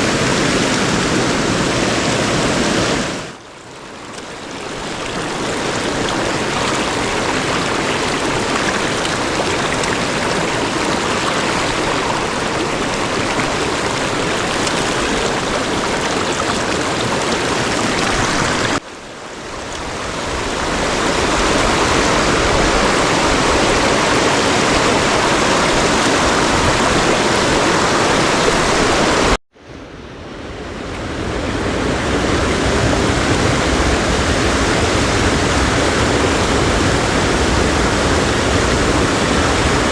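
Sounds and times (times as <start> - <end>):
stream water rushing: 0.0 - 29.4, 30.2 - 39.9.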